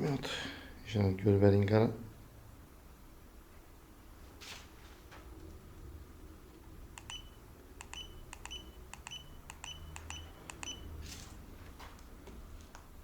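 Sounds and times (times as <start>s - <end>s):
short high key beeps: 7.0s - 11.0s.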